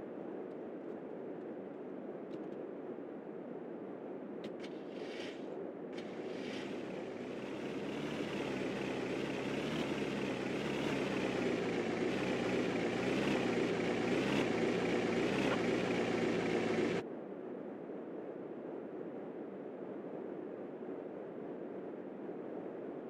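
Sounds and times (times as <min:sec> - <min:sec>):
vehicle engine running: 0:06.0 - 0:17.0.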